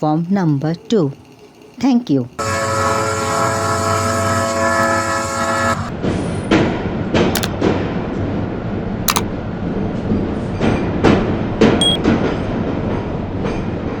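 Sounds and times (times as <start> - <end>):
train rumbling: 0.0 - 14.0
train horn: 2.4 - 6.0.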